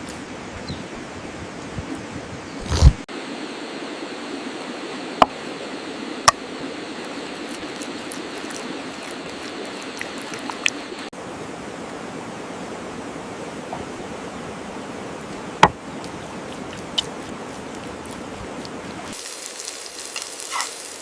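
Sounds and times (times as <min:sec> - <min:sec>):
meat sizzling: 0:06.3 - 0:11.1, 0:16.0 - 0:21.0.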